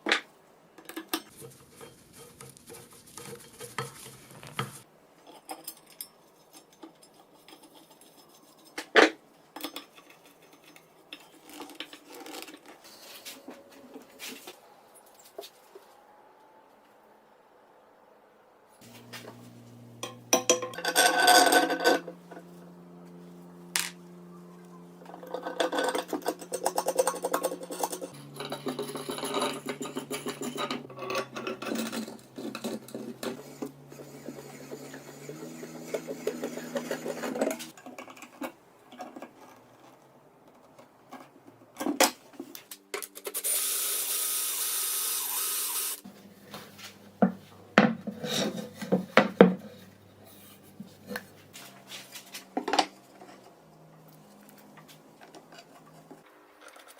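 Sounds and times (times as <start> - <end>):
power tool running: 32.2 - 37.7, 43.4 - 46.1
hand filing strokes: 32.3 - 37.7.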